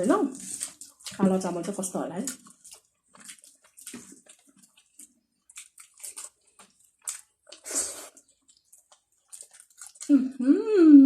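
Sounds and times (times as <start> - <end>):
chewing with lip-smacking clicks: 2.3 - 10.1.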